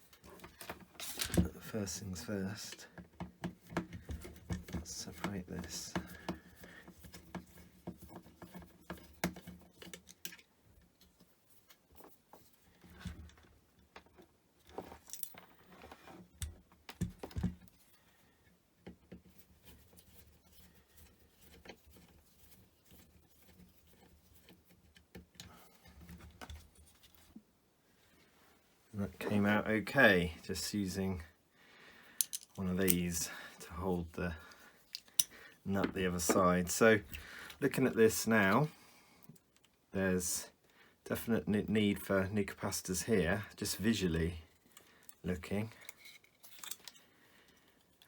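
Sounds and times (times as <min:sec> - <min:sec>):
hand tools clicking and scraping: 0:00.0 - 0:10.4, 0:32.2 - 0:37.8, 0:44.5 - 0:47.1.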